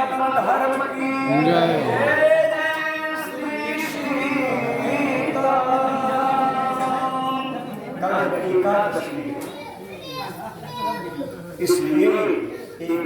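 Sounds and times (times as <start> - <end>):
person singing a devotional chant: 0.0 - 9.2.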